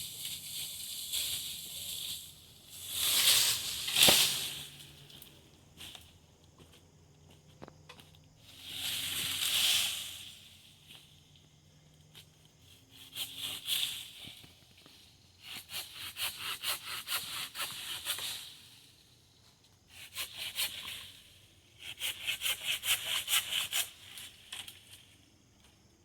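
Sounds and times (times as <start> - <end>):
hand saw cutting wood: 15.5 - 18.3, 21.9 - 24.0.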